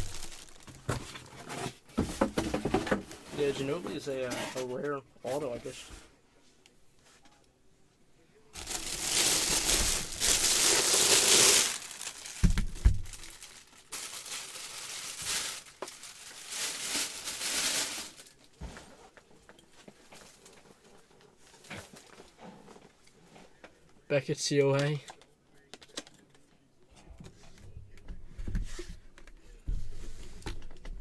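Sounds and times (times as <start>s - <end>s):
packaging crinkling and tearing: 0.0s - 1.5s, 8.6s - 18.4s.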